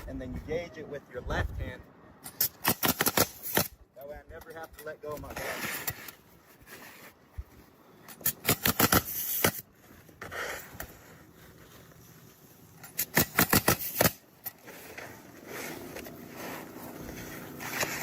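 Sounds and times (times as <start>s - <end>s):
nail gun firing sharp shots: 2.2s - 3.8s, 8.2s - 9.7s, 12.8s - 14.2s
shingles rustling and scraping: 4.5s - 18.0s.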